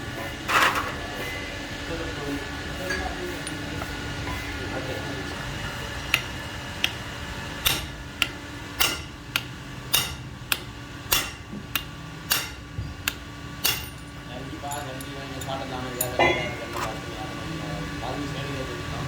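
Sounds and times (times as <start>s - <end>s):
sharp metallic knocks: 7.6s - 17.1s.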